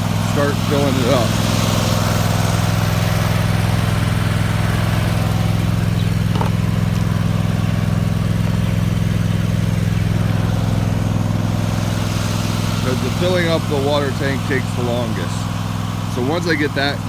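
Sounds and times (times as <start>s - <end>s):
small engine idling: 0.0s - 17.0s.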